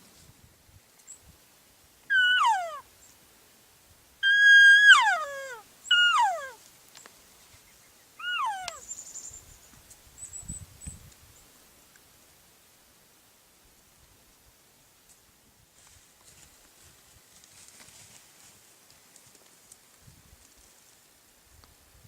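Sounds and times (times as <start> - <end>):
elk whistling calls: 2.1 - 2.8, 4.2 - 6.6, 8.2 - 9.0.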